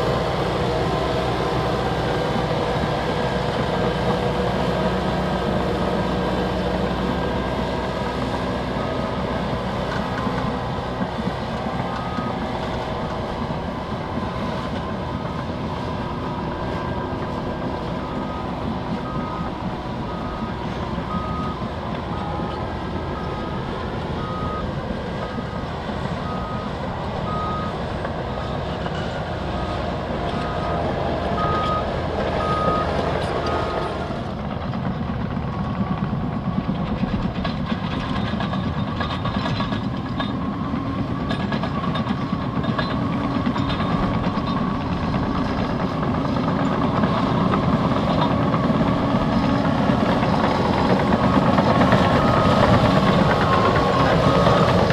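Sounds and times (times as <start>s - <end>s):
bulldozer diesel engines running: 0.0s - 54.9s
steel tracks clanking: 0.0s - 54.9s
reversing alarm beeping: 8.4s - 34.3s, 38.1s - 54.9s.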